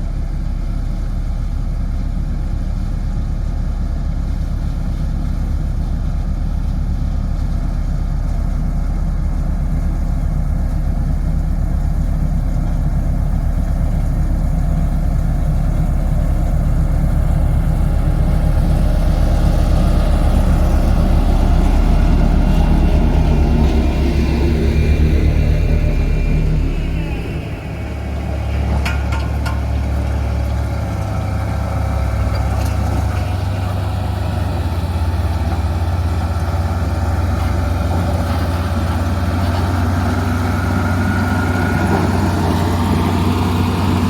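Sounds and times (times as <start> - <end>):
diesel engine throbbing: 0.0 - 44.0.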